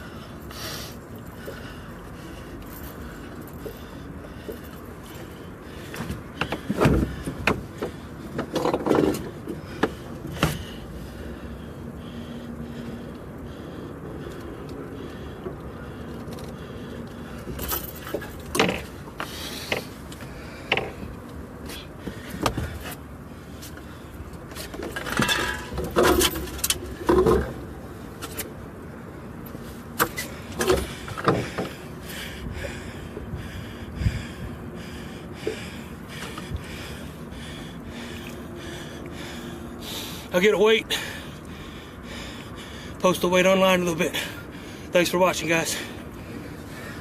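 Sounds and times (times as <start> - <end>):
knocks and rattles of handling: 4.4 - 10.6, 24.5 - 27.6.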